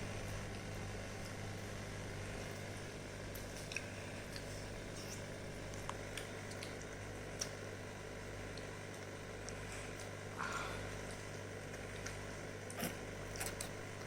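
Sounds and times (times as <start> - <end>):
steady low hum: 0.0 - 14.0
soft eating mouth sounds: 2.4 - 14.0.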